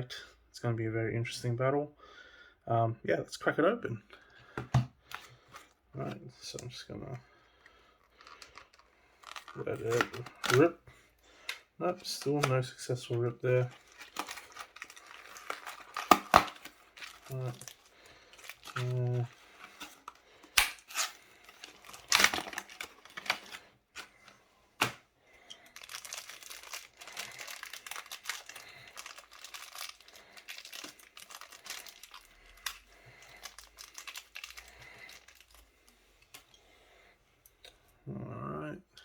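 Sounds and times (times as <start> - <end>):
packaging crinkling and tearing: 8.0 - 10.7, 11.5 - 25.0, 25.6 - 35.7.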